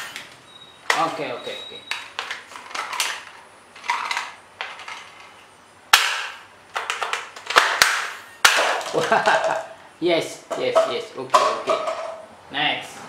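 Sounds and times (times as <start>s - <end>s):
plastic toy gun snaps and clicks: 5.9s - 8.9s.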